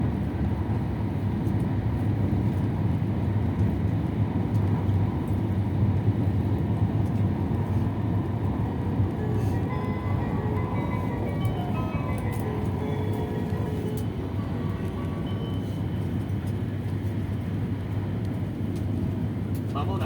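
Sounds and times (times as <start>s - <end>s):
train cabin running rumble: 0.0s - 20.0s
bell-like chime melody: 9.7s - 16.0s.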